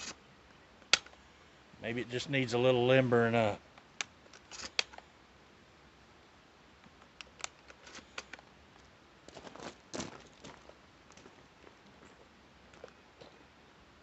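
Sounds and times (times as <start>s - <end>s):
handling clicks and rustles: 6.8s - 13.4s.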